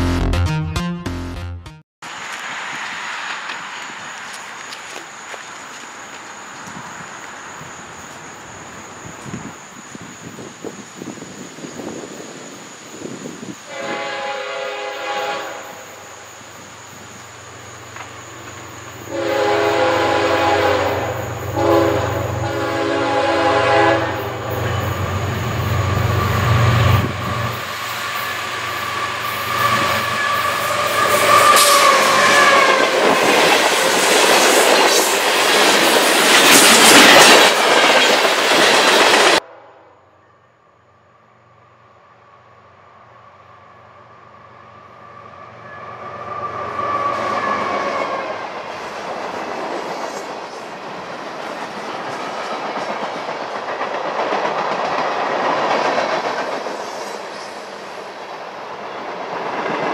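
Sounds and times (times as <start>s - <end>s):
train horn blasts: 13.7s - 16.2s, 19.0s - 25.1s, 25.8s - 33.0s, 39.4s - 40.3s, 45.5s - 48.4s.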